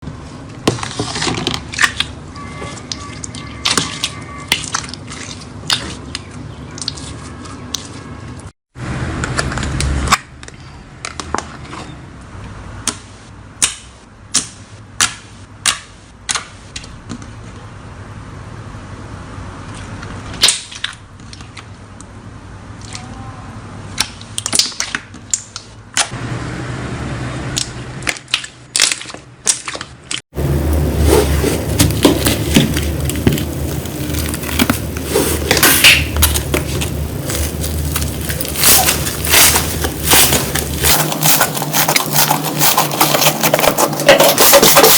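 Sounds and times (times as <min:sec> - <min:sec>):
sharp pops and crackles: 0:28.0 - 0:44.9
slime squeezed by hand: 0:30.9 - 0:44.9.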